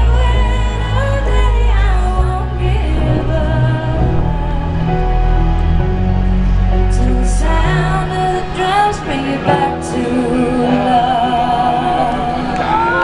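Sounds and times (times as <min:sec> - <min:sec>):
heavy bass: 0:00.0 - 0:13.0
held synth chords: 0:00.0 - 0:13.0
person singing: 0:06.8 - 0:13.0.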